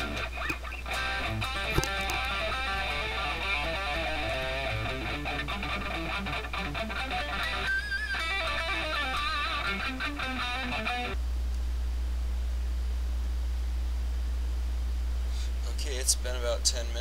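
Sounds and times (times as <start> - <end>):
electric guitar notes: 0.0 - 11.2
amp low hum: 0.0 - 17.0.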